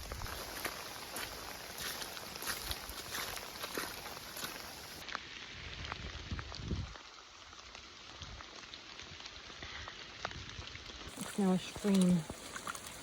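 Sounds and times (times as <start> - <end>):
steady rain falling: 0.0 - 13.0
raindrops tapping: 11.0 - 13.0.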